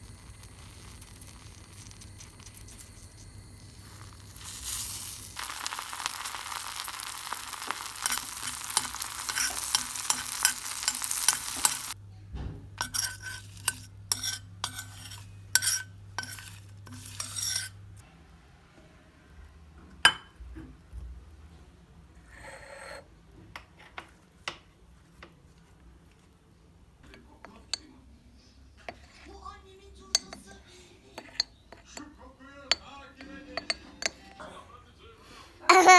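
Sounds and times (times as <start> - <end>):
butter sizzling in a pan: 0.0 - 12.0, 12.8 - 18.0
stirring strokes in a pan: 0.0 - 12.0, 12.8 - 18.0, 28.3 - 32.0.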